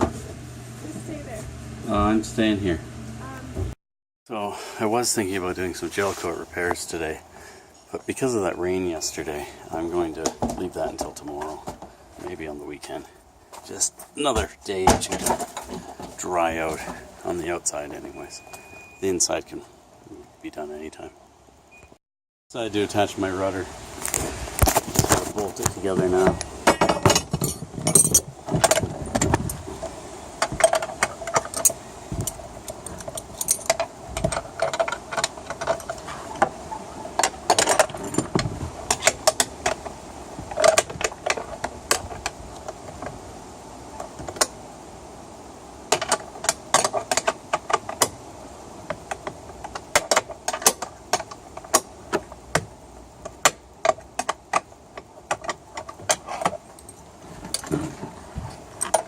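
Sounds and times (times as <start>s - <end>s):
small metal parts clinking: 26.8s - 28.8s, 30.6s - 36.1s.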